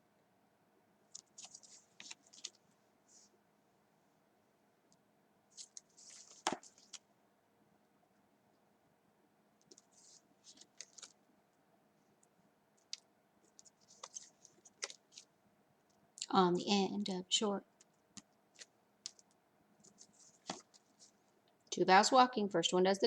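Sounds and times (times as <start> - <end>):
short scratchy rustles: 5.5 - 7.0.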